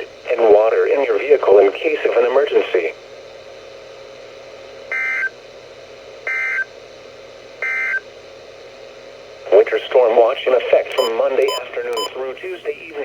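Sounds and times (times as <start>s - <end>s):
radio hiss: 0.0s - 3.0s, 9.4s - 13.0s.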